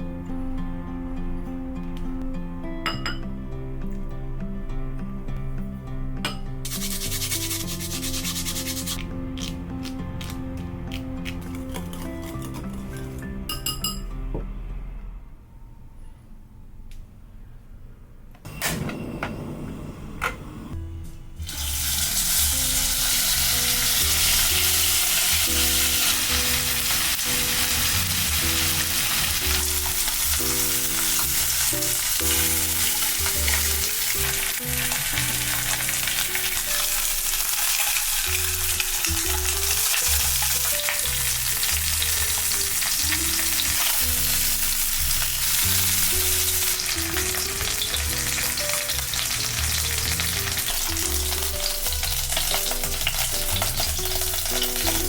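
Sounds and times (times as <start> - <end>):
quiet background music: 0.0 - 55.0
food sizzling in hot oil: 6.7 - 9.0, 21.4 - 55.0.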